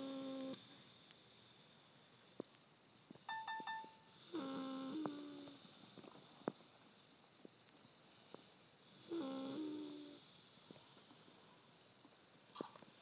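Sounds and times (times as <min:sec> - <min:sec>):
person snoring: 0:04.1 - 0:06.6, 0:08.9 - 0:11.7.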